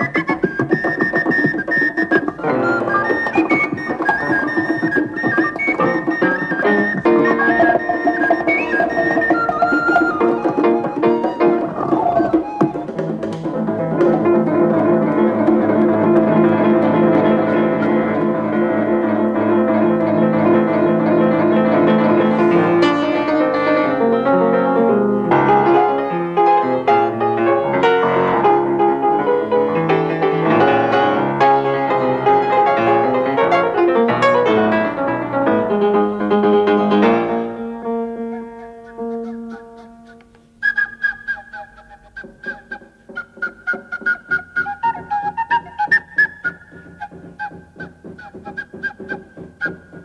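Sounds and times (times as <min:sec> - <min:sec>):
light percussion: 0:00.0 - 0:23.6, 0:37.0 - 0:50.0
piano film score: 0:00.0 - 0:50.0.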